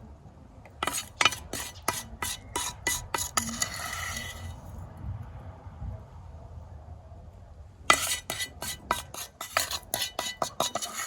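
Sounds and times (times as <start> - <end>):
metal utensil scraping a pan: 0.8 - 4.7, 7.9 - 11.0.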